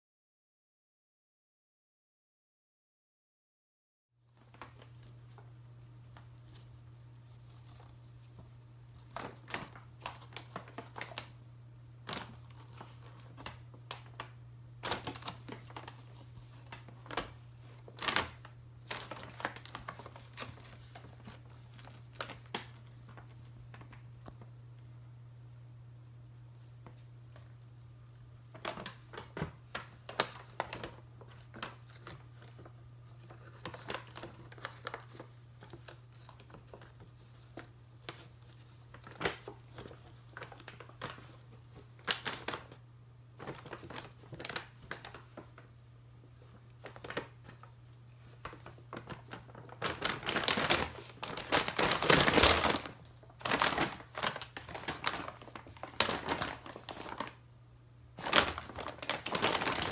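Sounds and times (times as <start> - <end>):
steady low hum: 4.3 - 51.9
paper bag crinkling: 6.1 - 11.4, 12.0 - 24.6, 28.4 - 57.4, 58.1 - 59.9.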